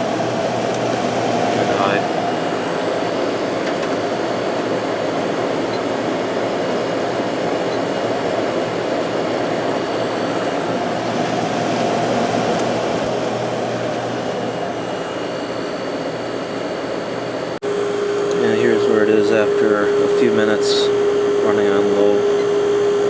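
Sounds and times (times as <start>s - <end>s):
air conditioner fan rushing: 0.0s - 23.0s
low motor hum: 0.0s - 23.0s.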